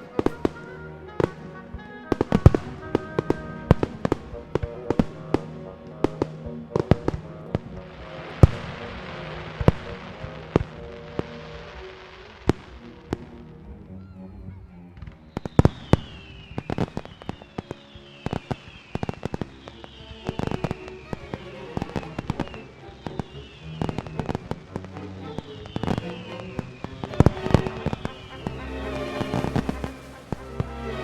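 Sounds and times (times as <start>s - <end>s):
music: 0.0s - 31.0s
fireworks bangs and crackles: 0.1s - 13.3s, 15.0s - 31.0s
falling whistle: 15.3s - 24.4s, 25.2s - 30.0s.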